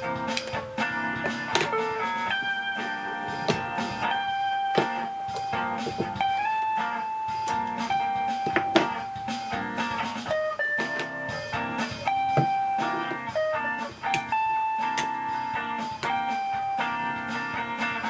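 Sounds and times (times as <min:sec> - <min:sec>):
guitar-led background music: 0:00.0 - 0:18.0.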